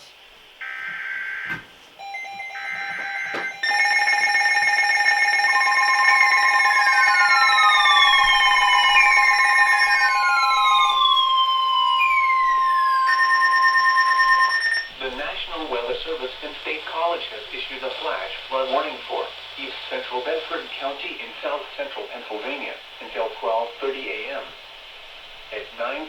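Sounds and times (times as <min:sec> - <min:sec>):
emergency alert tones: 0:00.6 - 0:15.2.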